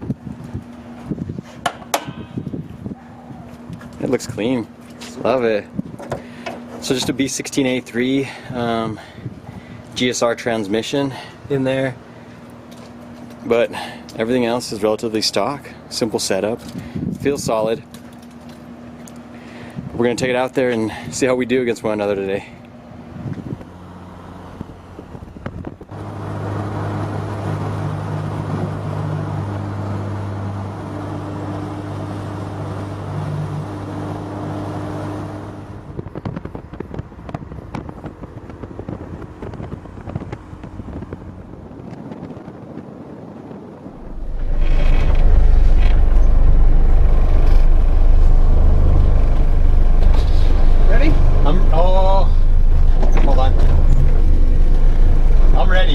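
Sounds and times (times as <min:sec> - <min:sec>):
loud low rumble: 0:43.9 - 0:55.9
car engine running: 0:44.0 - 0:55.9.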